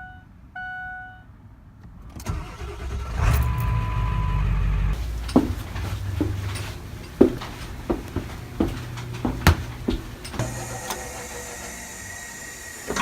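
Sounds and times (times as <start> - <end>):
short steady beep: 0.0 - 1.3
car engine starting and running: 2.0 - 13.0.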